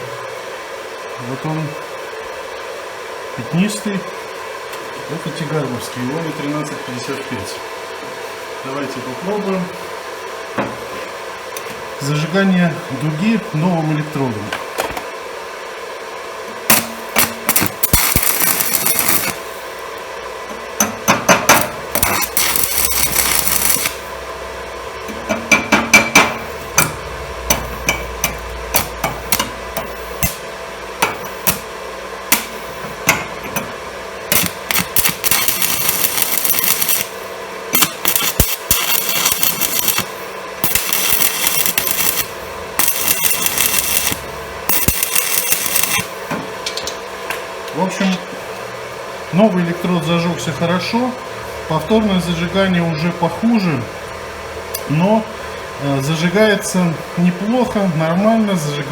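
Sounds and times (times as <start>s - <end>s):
welding arc crackling and sizzling: 16.4s - 48.2s.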